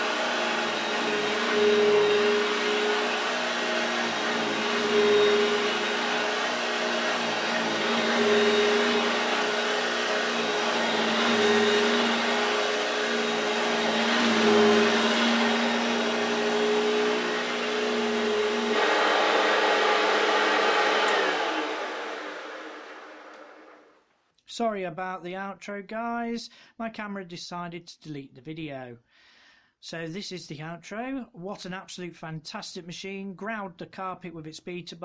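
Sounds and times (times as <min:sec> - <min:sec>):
vacuum cleaner motor hum: 0:00.0 - 0:24.0.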